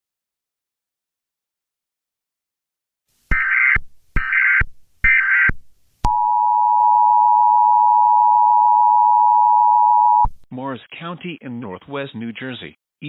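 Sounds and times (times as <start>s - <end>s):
data bursts: 3.3s - 6.4s.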